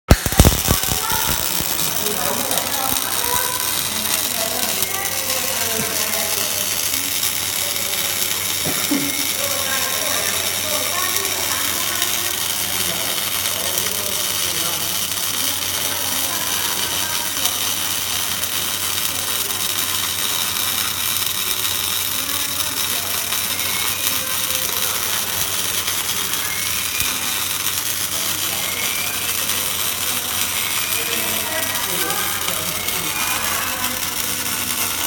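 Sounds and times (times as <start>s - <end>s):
arc welding crackling sizzle: 0.0s - 35.0s.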